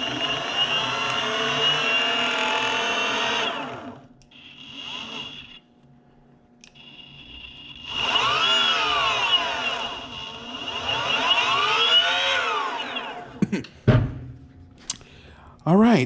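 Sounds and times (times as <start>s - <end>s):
electric skateboard motor whine: 0.0s - 5.6s, 6.6s - 13.4s
motor throttle blips: 0.0s - 5.6s, 6.6s - 13.4s.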